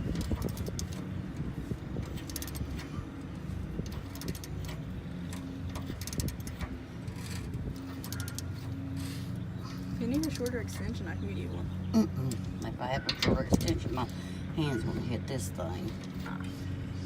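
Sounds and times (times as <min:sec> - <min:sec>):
socket wrench ratcheting: 0:00.0 - 0:01.0, 0:02.0 - 0:02.9, 0:03.8 - 0:08.6.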